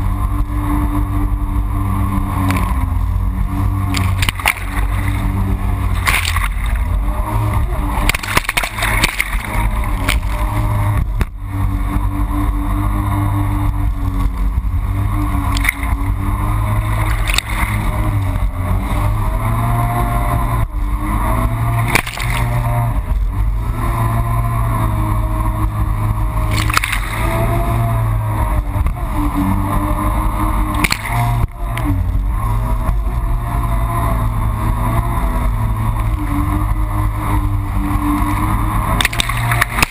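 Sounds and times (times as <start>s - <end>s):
jet ski engine running: 0.0s - 39.9s
hull slapping water: 2.3s - 24.6s, 25.5s - 29.2s, 30.5s - 32.3s, 36.0s - 39.9s.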